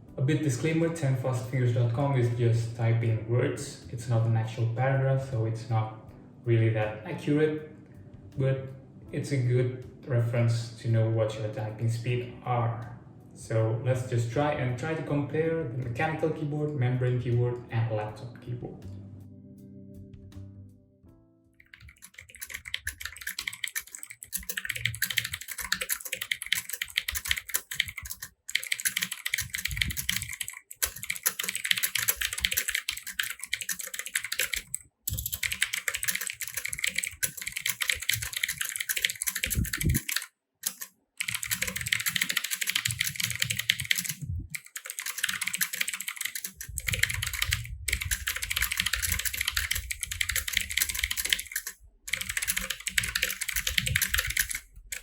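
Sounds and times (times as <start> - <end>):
fast typing on keyboard: 21.6 - 55.0.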